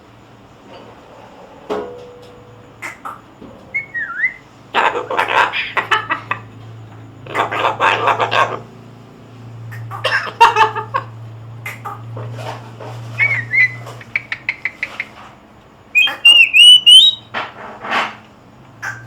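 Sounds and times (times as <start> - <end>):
cockatoo calling: 2.7 - 17.3, 18.8 - 19.0
loud wavering whistle: 3.7 - 4.5, 13.2 - 14.6, 15.9 - 17.3
cockatoo clicks: 11.6 - 12.1, 13.2 - 15.2, 16.0 - 17.2.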